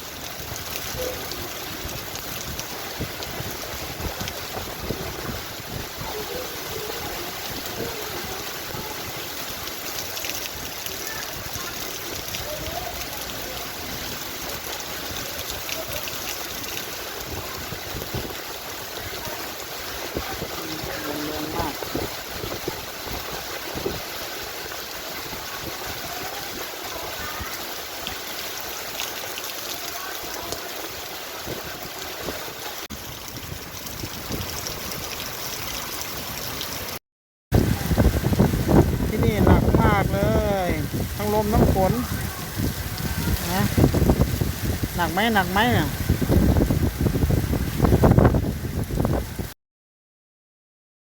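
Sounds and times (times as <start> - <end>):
heavy rain pouring: 0.0 - 49.6
wind buffeting microphone: 0.5 - 8.9, 17.2 - 19.3, 19.9 - 24.2, 31.4 - 35.2, 37.5 - 49.5.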